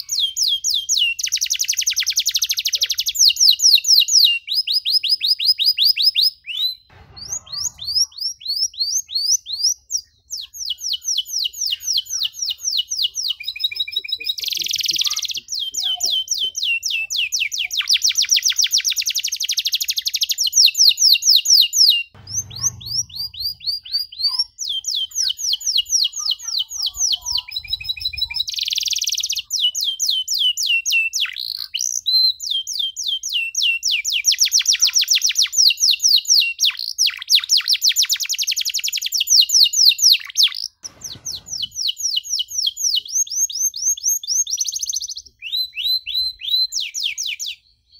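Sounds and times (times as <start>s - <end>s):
canary singing trills: 0.0s - 47.9s
soft low thump: 6.9s - 8.2s, 22.2s - 24.0s.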